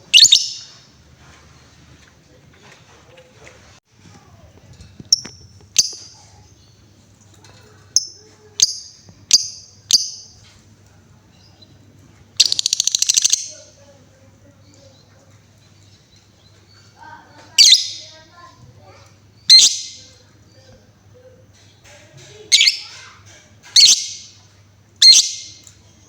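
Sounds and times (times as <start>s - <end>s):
lovebird chirping: 0.0s - 0.8s, 5.1s - 6.8s, 7.9s - 10.4s, 12.4s - 13.7s, 17.5s - 18.2s, 19.4s - 20.2s, 22.5s - 22.9s, 23.7s - 24.4s, 25.0s - 25.7s.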